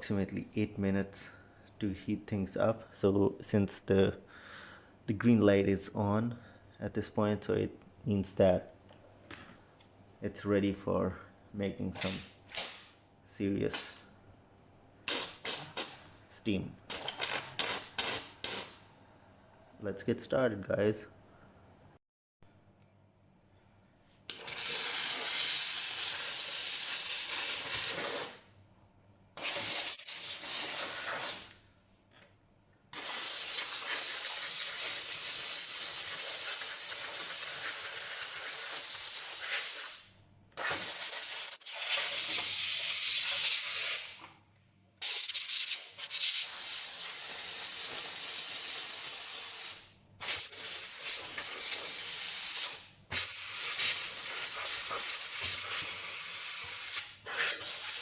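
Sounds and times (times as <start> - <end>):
steam cleaner hissing: 24.3 - 28.4, 29.4 - 31.4, 33.0 - 40.0, 40.6 - 44.2, 45.0 - 58.0.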